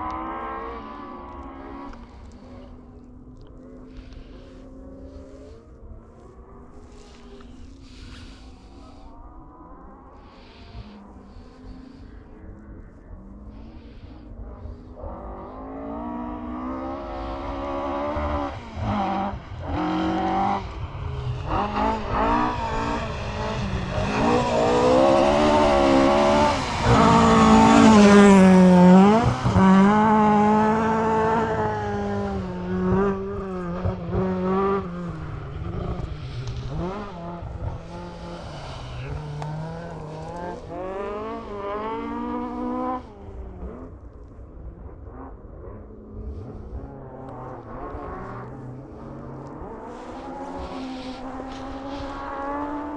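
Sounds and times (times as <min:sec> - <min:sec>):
rally car engine revving past: 0:13.4 - 0:44.0, 0:44.6 - 0:52.9.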